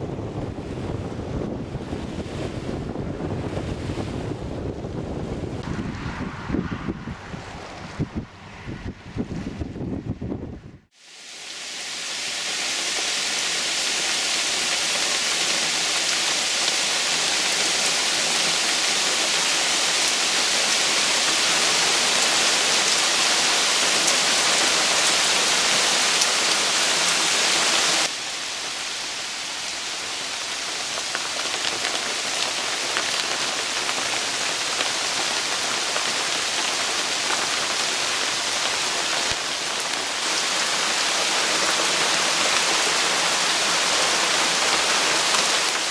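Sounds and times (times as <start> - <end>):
rush of running water: 10.9 - 45.9.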